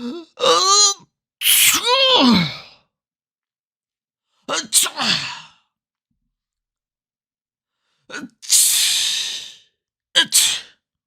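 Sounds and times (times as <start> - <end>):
person sneezing: 10.2 - 10.8.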